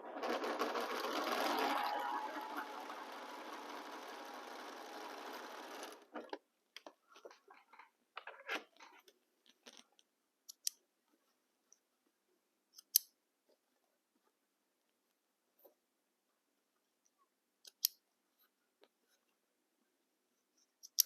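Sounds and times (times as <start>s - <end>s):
sewing machine stitching: 0.0s - 6.4s.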